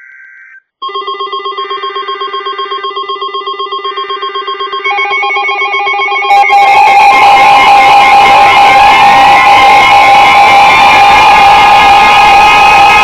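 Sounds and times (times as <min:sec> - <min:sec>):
high two-tone data chirp: 0:00.0 - 0:08.5
alarm tones: 0:00.0 - 0:13.0
pulsing electronic alarm: 0:00.0 - 0:13.0.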